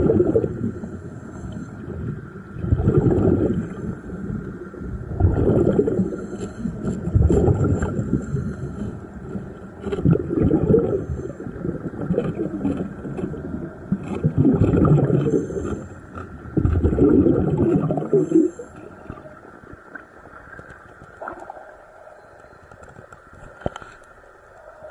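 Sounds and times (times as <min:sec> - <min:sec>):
gurgling bubbles: 0:00.0 - 0:21.9
diver breathing underwater: 0:00.1 - 0:04.4, 0:05.2 - 0:12.7, 0:14.3 - 0:19.3.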